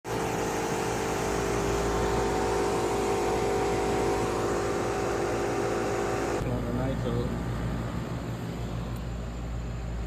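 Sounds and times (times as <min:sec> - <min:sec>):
machine motor whirring: 0:00.1 - 0:06.4.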